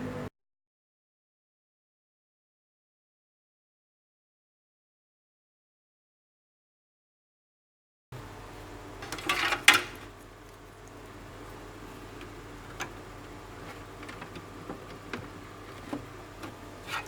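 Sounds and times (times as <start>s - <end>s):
steady low hum: 8.2s - 17.0s.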